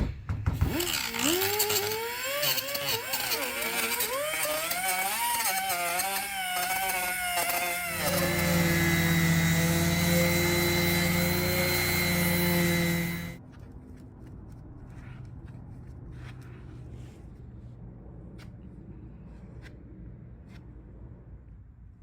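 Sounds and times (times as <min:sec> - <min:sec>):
electric grinder cutting metal: 0:00.7 - 0:13.4.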